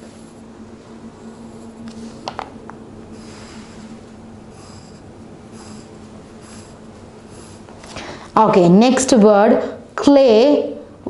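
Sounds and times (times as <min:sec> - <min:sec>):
low hum: 0:00.0 - 0:10.0
pen scratching on paper: 0:04.5 - 0:07.7.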